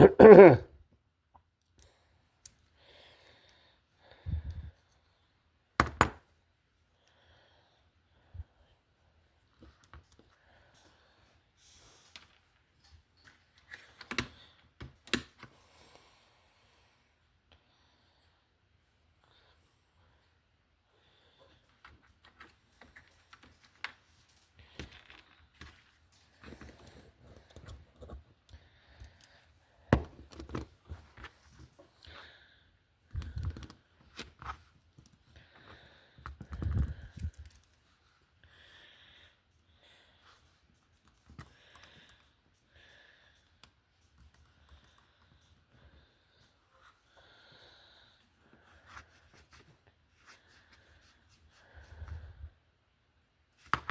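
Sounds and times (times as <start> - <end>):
clicking of small parts and tools: 1.6 - 2.8, 22.2 - 30.7, 33.1 - 35.4, 36.2 - 37.9, 40.4 - 45.6.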